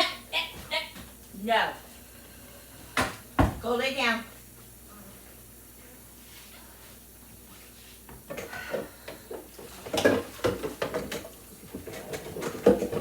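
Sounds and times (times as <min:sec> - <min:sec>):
kitchen items knocking and clattering: 0:09.5 - 0:13.0.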